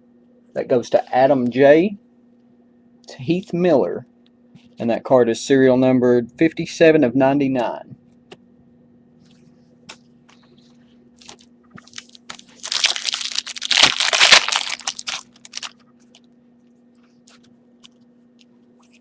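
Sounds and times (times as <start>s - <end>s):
steady low hum: 0.0s - 19.0s
foil wrapper tearing and crinkling: 11.2s - 15.8s.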